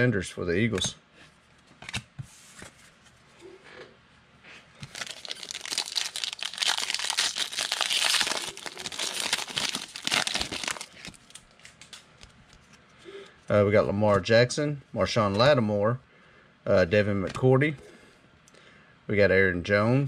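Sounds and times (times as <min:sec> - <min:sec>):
plastic wrapper tearing and crinkling: 0:04.8 - 0:12.3.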